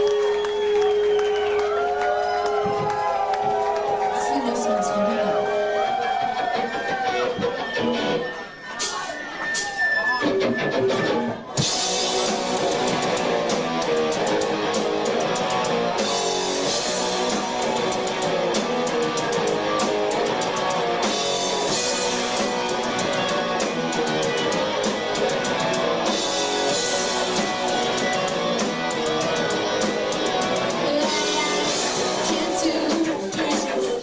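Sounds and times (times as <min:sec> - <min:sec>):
electric guitar: 0:00.0 - 0:08.7, 0:09.4 - 0:34.0
drum kit steady beat: 0:11.5 - 0:34.0.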